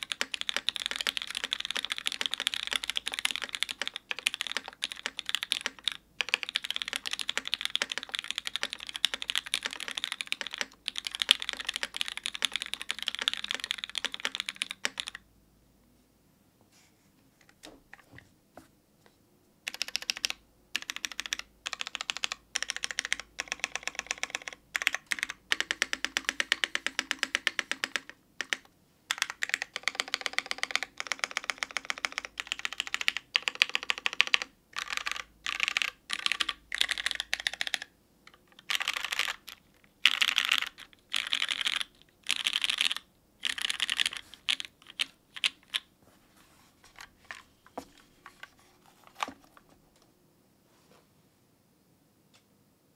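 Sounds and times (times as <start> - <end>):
mechanical keyboard typing: 0.0 - 15.2, 19.7 - 45.9.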